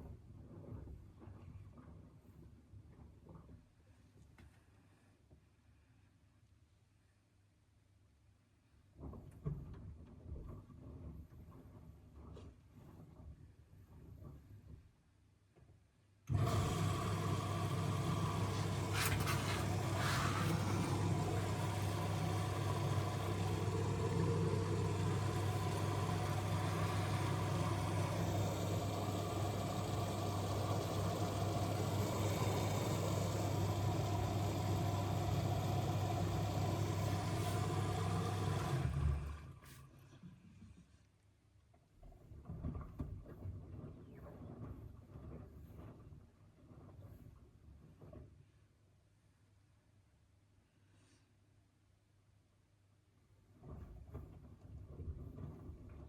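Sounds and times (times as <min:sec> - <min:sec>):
washing machine humming: 0:16.3 - 0:40.2.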